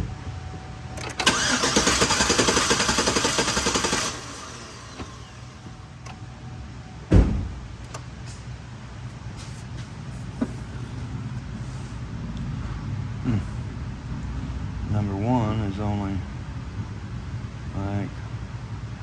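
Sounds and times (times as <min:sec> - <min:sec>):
engine cranking on starter: 0:01.0 - 0:05.8
loud thump: 0:07.1 - 0:07.6.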